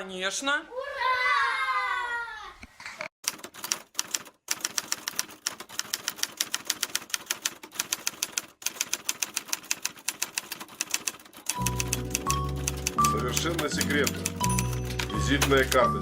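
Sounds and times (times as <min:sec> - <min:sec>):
typewriter keys clacking: 0:03.2 - 0:15.9.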